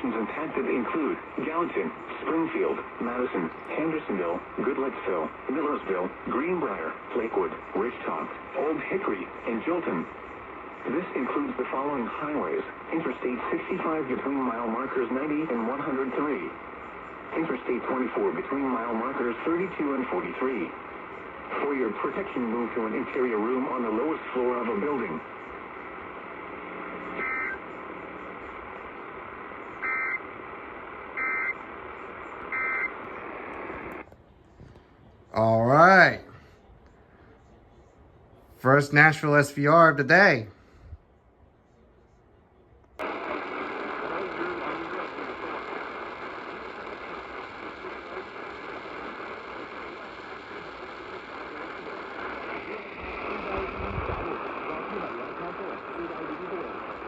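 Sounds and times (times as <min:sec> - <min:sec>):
radio static: 0:00.0 - 0:34.8, 0:35.4 - 0:36.3, 0:38.6 - 0:40.5, 0:43.0 - 0:57.0
data tone bursts: 0:31.2 - 0:31.6, 0:32.5 - 0:33.0.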